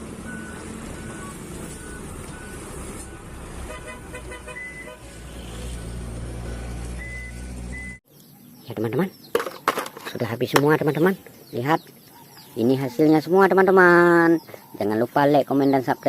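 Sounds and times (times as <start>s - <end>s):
recorded engine rumble: 0.0s - 8.8s
short reversing beeps: 0.3s - 3.3s, 5.7s - 8.0s.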